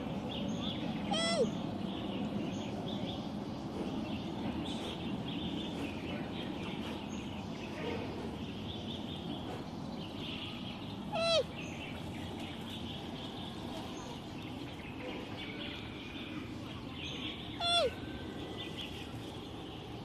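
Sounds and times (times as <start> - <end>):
panda cub high-pitched call: 1.1 - 1.6, 11.1 - 11.5, 17.6 - 18.0.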